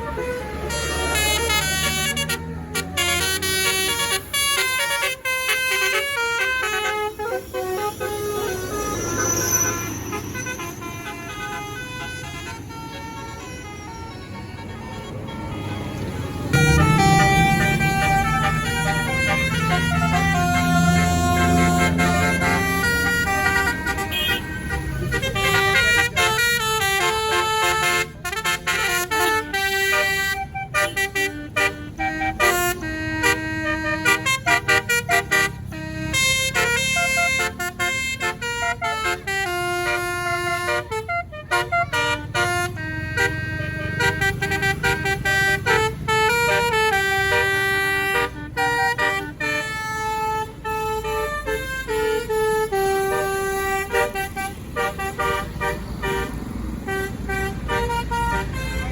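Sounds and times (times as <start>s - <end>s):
low engine rumble: 0.0s - 35.0s
bus horn playing a melody: 0.0s - 58.9s.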